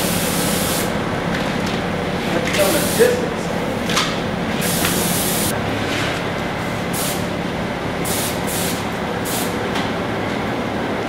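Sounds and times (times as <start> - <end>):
compressed air hissing: 0.0 - 1.0, 2.6 - 3.4, 4.6 - 5.5, 6.9 - 7.3, 8.0 - 9.6
mechanical drone with low hum: 0.0 - 11.0.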